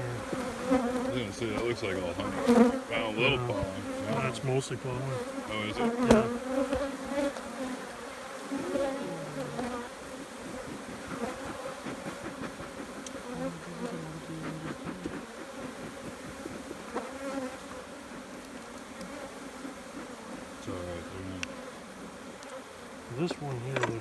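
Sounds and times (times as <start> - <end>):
honeybees buzzing: 0.0 - 24.0
faint clicks: 10.7 - 13.3, 22.4 - 22.6.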